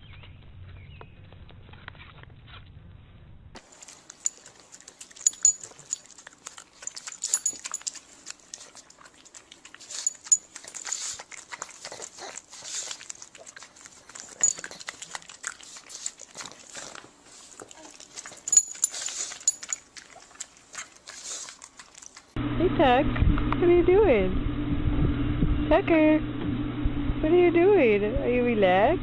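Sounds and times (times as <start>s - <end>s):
dog making sharp noises: 3.6s - 22.4s.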